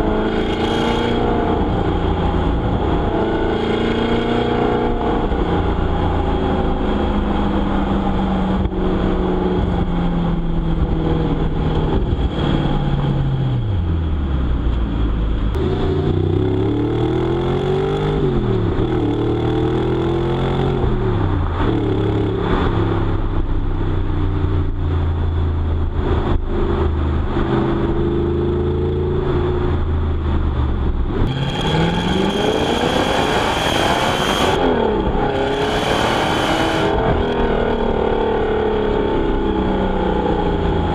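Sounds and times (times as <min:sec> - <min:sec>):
car engine revving: 0:00.0 - 0:40.9.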